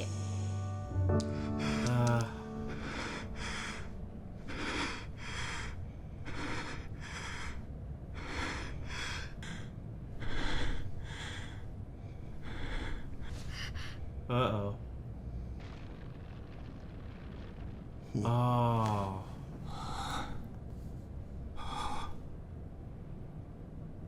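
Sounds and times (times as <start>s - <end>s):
heavy ragged breathing: 1.2s - 14.2s, 19.2s - 22.3s
low steady rumble: 2.4s - 24.0s.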